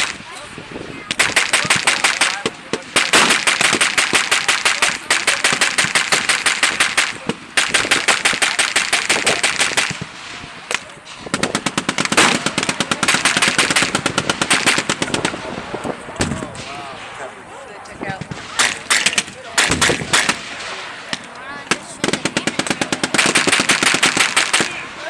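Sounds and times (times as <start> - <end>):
machine gun bursts: 1.1 - 15.6, 18.2 - 25.0.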